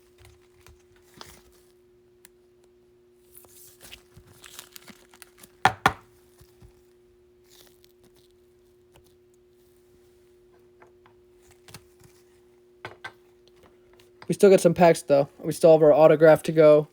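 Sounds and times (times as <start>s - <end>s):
plastic card sleeves crinkling: 3.3s - 5.6s, 6.2s - 9.9s.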